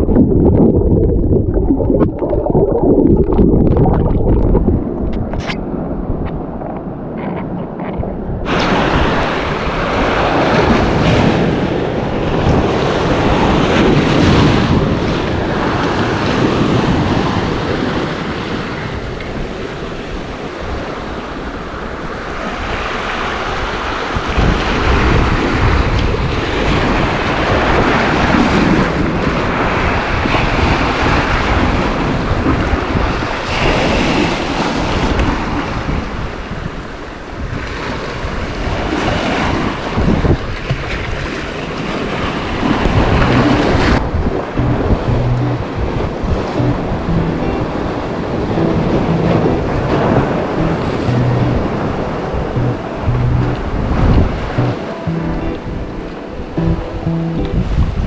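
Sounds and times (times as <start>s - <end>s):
wind buffeting microphone: 0.0s - 21.2s, 24.2s - 49.0s
sea waves: 8.4s - 58.0s.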